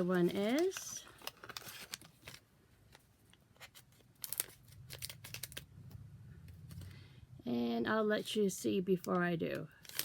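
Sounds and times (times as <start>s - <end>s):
foil packet crinkling open: 0.0s - 2.5s, 3.6s - 5.7s, 9.0s - 10.0s.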